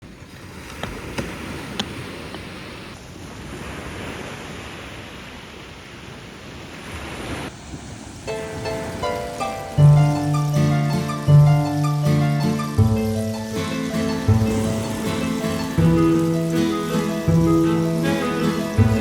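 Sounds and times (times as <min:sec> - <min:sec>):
rushing surf or wind: 0:00.0 - 0:19.0
plucked-string music: 0:08.3 - 0:19.0.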